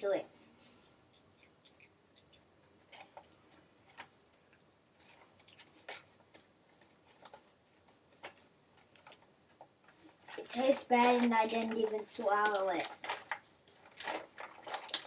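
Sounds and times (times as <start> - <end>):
mouth clicks and smacks chewing: 1.1 - 6.5.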